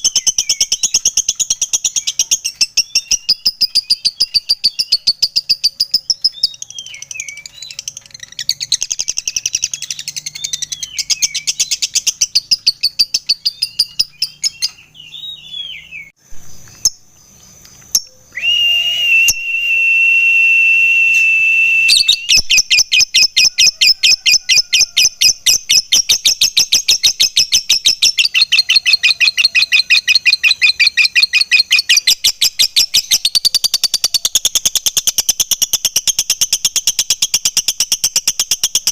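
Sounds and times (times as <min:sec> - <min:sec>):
bird chirps: 0:00.0 - 0:38.9
lovebird chattering: 0:22.3 - 0:38.9.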